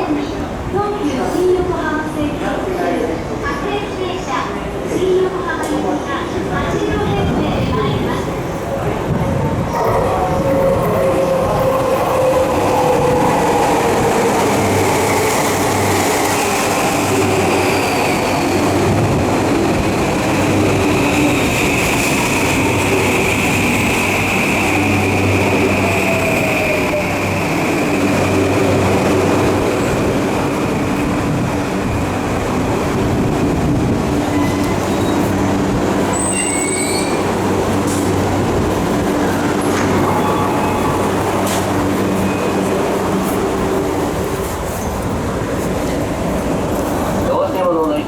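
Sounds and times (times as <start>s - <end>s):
high wheel squeaks: 36.1s - 37.3s.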